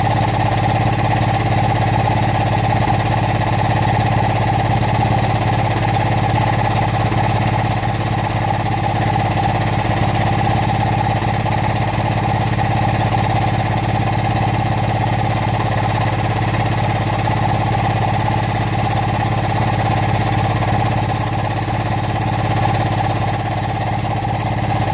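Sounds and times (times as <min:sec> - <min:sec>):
excavator engine running: 0:00.0 - 0:24.9.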